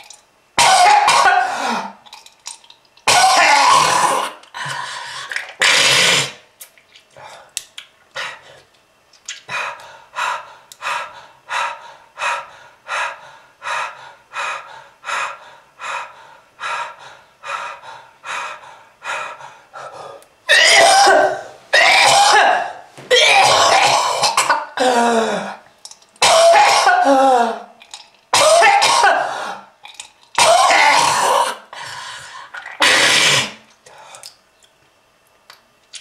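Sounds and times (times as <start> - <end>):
person coughing: 0.6 - 2.0, 3.1 - 4.4, 20.5 - 25.6, 26.2 - 27.7, 28.3 - 29.4, 30.4 - 31.6.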